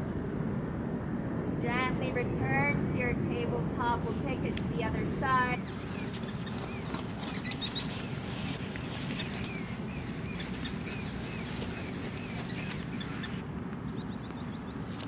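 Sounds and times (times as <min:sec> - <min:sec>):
low background noise: 0:00.0 - 0:15.0
small birds chirping: 0:05.2 - 0:15.0.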